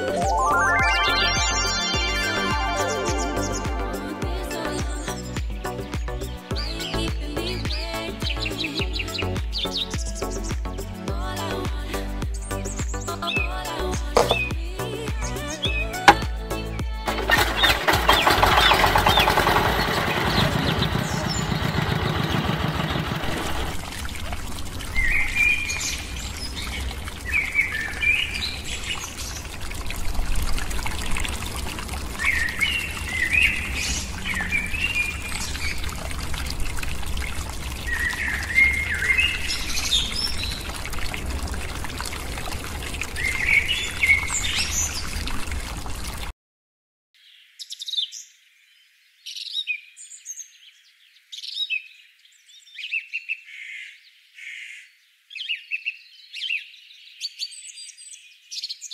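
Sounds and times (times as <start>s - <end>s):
loud steady pitched tone: 0.0s - 4.4s
bird chirping: 14.2s - 14.6s.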